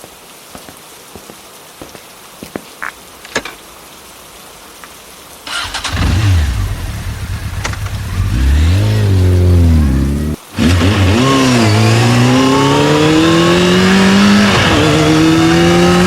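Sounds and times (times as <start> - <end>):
vehicle engine starting and revving: 5.5 - 16.0
clicks: 7.6 - 8.2.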